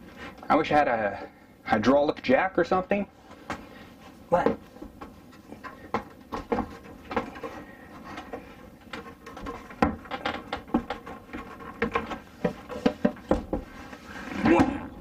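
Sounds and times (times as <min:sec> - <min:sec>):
knocks taps and clatter of table: 0:08.9 - 0:13.7.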